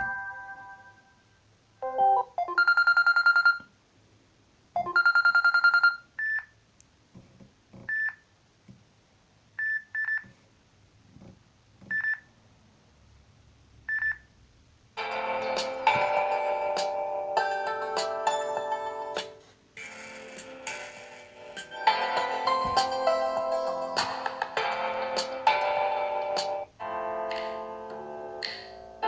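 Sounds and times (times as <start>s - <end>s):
phone ringtone melody: 0.0s - 1.1s, 1.8s - 3.6s, 15.0s - 19.2s, 19.8s - 29.0s.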